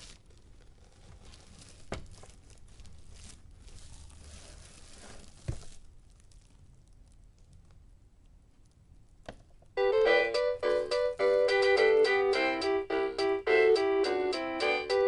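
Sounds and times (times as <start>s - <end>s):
packaging rustling and crinkling: 0.0s - 7.8s.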